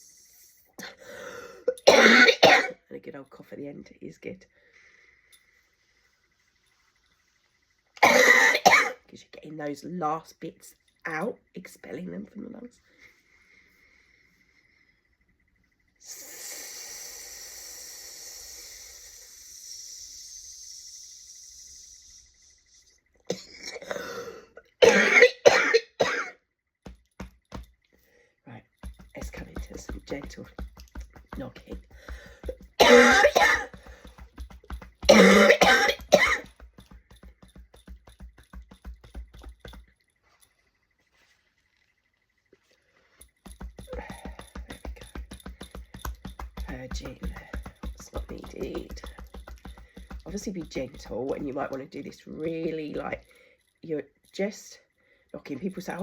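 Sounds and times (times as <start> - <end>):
long breath hiss: 0.0 - 1.6, 16.0 - 23.0
person coughing: 1.7 - 2.8, 8.0 - 9.0, 23.3 - 26.3, 32.2 - 34.0, 35.0 - 36.5
hand knocking on chest: 26.9 - 27.7, 43.5 - 51.1.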